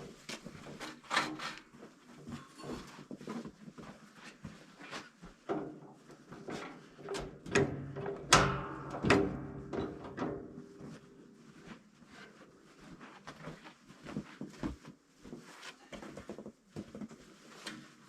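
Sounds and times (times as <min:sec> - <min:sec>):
metallic clanks of equipment: 0:06.5 - 0:10.8
metal ringing: 0:08.3 - 0:10.1.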